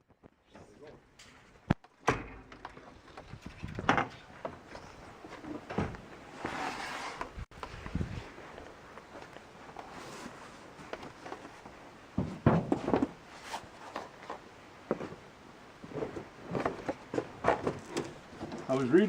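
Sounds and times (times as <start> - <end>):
hardware and boxes clattering: 9.8 - 14.4.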